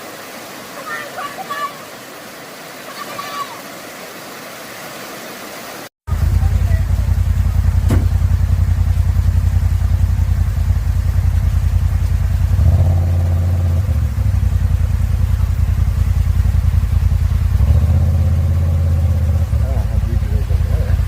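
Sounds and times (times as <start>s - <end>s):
vehicle engine rumbling: 6.1s - 21.0s.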